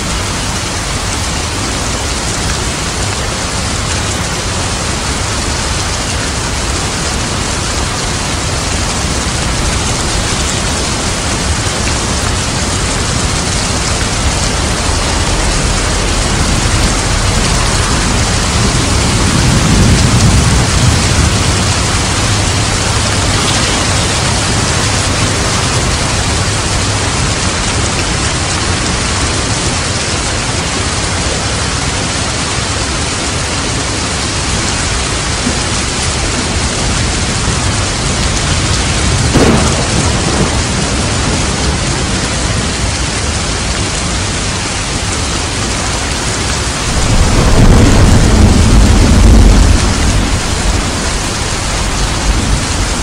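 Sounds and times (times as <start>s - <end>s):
heavy rain: 0.0s - 53.0s
low roll of thunder: 6.6s - 27.9s, 35.5s - 43.1s, 46.6s - 53.0s.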